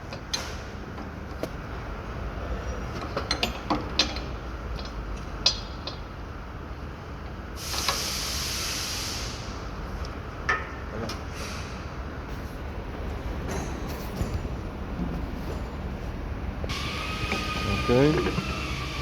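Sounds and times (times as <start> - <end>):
steady air hiss: 7.6 - 9.6, 16.7 - 19.0.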